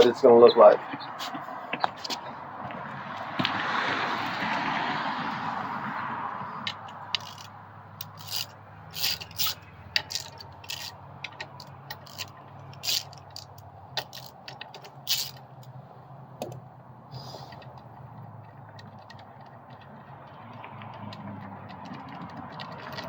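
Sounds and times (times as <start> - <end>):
metal clinks and knocks: 6.7 - 15.7.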